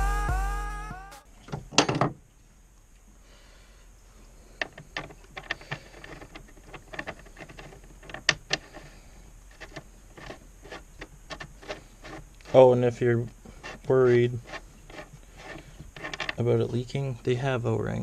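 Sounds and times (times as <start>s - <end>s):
clicks and knocks of metal and plastic: 4.6s - 8.9s, 9.5s - 12.6s, 14.5s - 16.8s.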